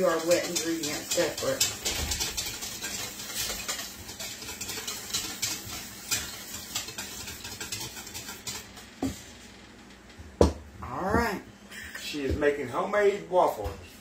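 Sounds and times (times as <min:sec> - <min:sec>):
whisk clicking against bowl: 0:00.0 - 0:08.9.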